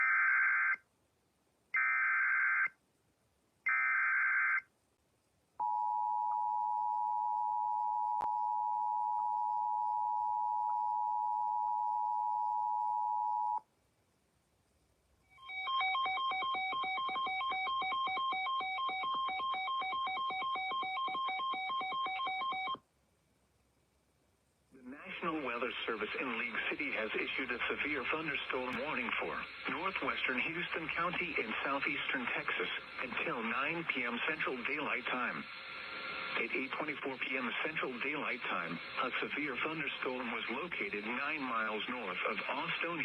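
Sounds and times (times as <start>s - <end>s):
steady two-tone alert signal: 15.4s - 22.8s
voice message: 24.8s - 35.6s, 36.2s - 43.0s.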